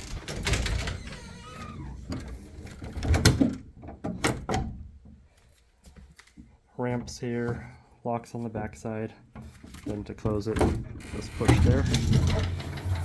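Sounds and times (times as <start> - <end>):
folding door sliding and rubbing: 0.0 - 4.5, 10.7 - 13.0.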